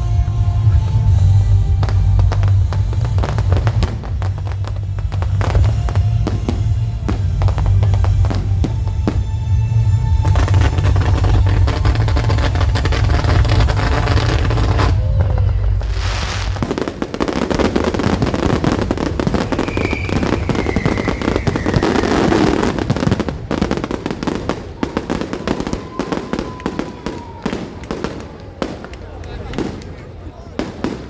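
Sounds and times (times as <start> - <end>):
music with heavy bass: 0.0 - 16.6
fireworks crackling: 0.0 - 31.0
falling firework whistle: 0.4 - 28.8.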